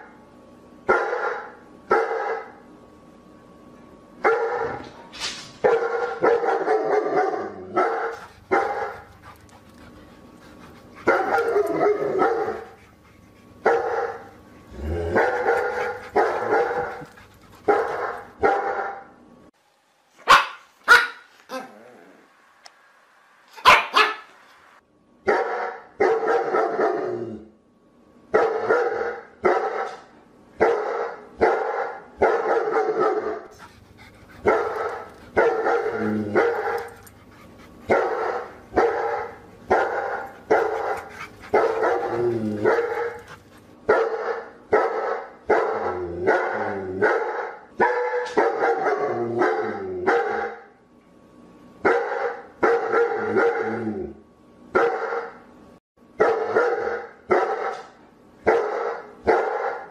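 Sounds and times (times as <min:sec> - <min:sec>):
dog barking: 0:00.9 - 0:02.6, 0:04.2 - 0:04.9, 0:05.6 - 0:09.0, 0:11.0 - 0:12.7, 0:13.6 - 0:14.3, 0:15.2 - 0:17.1, 0:17.7 - 0:19.1, 0:20.2 - 0:21.7, 0:23.6 - 0:24.3, 0:25.3 - 0:27.0, 0:28.3 - 0:33.5, 0:34.4 - 0:37.0, 0:37.9 - 0:43.3, 0:43.9 - 0:50.7, 0:51.8 - 0:53.7, 0:54.8 - 0:55.4, 0:56.2 - 0:59.9.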